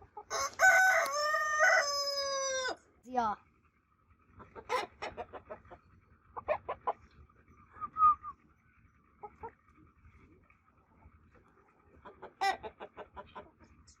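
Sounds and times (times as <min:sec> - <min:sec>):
rooster pitched call: 0:00.3 - 0:02.8
rooster clucking: 0:04.3 - 0:07.1, 0:09.1 - 0:09.7, 0:11.8 - 0:13.8.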